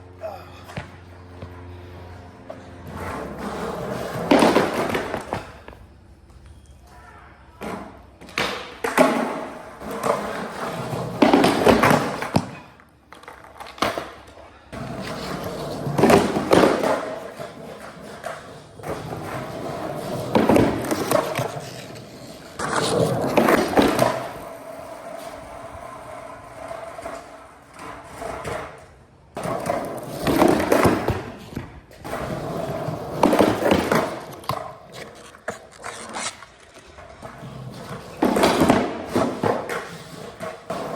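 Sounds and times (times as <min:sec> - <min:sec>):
skateboard wheels rolling: 0:00.0 - 0:40.9.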